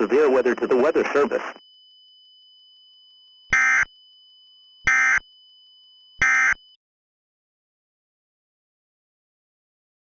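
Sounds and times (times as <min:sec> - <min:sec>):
screeching data tone bursts: 0:06.2 - 0:06.6.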